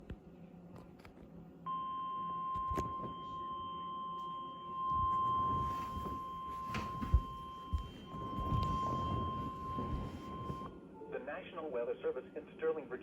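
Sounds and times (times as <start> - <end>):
steady alarm beep: 1.7 - 10.8.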